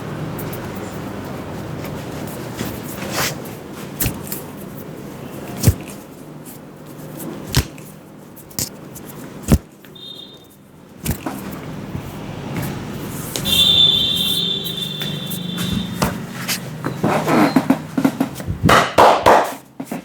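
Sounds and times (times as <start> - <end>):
steady background hum: 0.0 - 20.0
short high electronic beep: 13.5 - 16.0.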